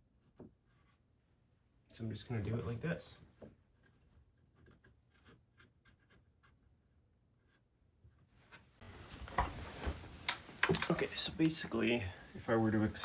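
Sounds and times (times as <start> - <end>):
background hiss: 8.8 - 13.0.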